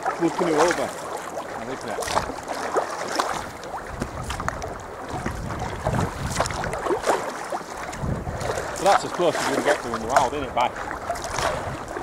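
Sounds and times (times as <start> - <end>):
paddle splashing water: 0.0 - 12.0
wind buffeting microphone: 1.6 - 2.4, 3.3 - 12.0.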